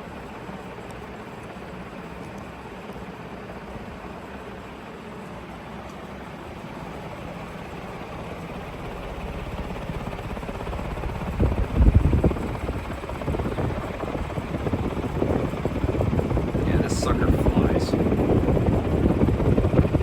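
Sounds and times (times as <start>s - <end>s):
ceiling fan whooshing: 6.1s - 20.0s
wind buffeting microphone: 8.8s - 20.0s.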